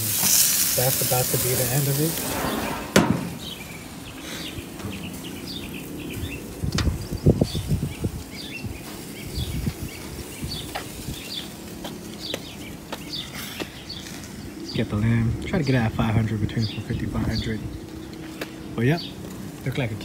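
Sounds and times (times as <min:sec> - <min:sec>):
small birds chirping: 0:00.0 - 0:20.0
dull thumps and rumbles: 0:02.3 - 0:03.7.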